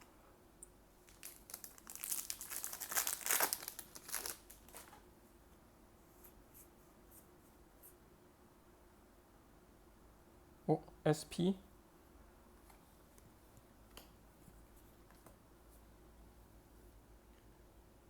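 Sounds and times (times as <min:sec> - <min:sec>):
wrapper crinkling and tearing: 0:01.0 - 0:05.0.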